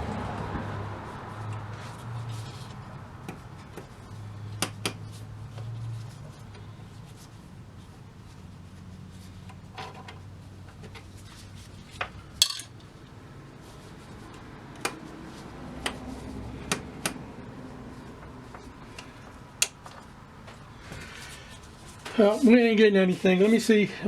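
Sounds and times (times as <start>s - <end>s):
metal tools clinking on workbench: 12.4s - 12.8s.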